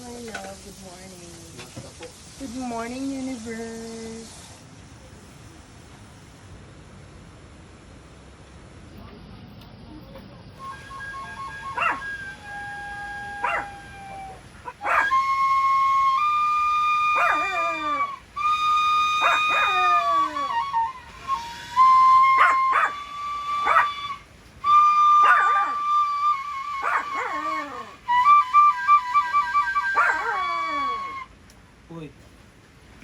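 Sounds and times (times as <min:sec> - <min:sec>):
background music held melody: 0:10.6 - 0:31.3
dog yelping: 0:11.7 - 0:12.1, 0:13.4 - 0:13.8, 0:14.6 - 0:15.2, 0:17.2 - 0:18.2, 0:19.2 - 0:20.5, 0:22.4 - 0:23.0, 0:23.6 - 0:24.0, 0:25.2 - 0:25.8, 0:26.8 - 0:28.0, 0:30.0 - 0:31.0.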